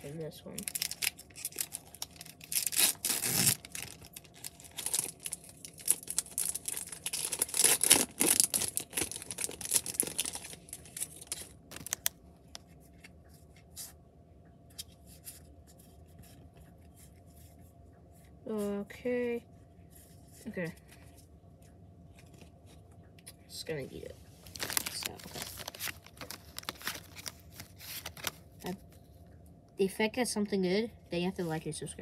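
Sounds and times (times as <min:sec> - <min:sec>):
wrapper tearing and crinkling: 0:00.5 - 0:12.2, 0:24.4 - 0:28.4.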